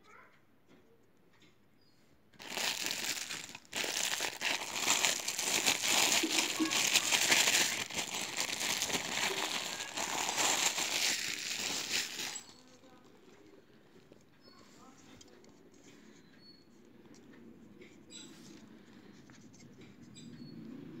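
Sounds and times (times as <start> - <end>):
plastic packaging crinkling: 2.4 - 12.7.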